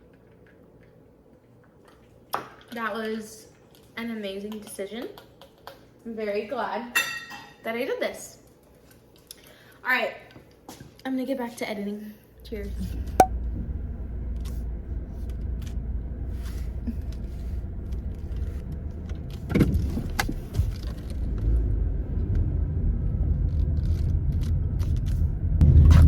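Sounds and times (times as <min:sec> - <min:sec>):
car cabin rumble while driving: 0:12.5 - 0:26.0.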